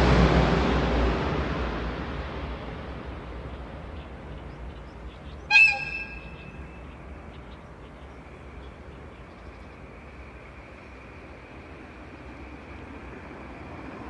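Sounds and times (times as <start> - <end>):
steady low rumble: 0.0 - 14.0
locomotive horn blast: 5.5 - 6.6.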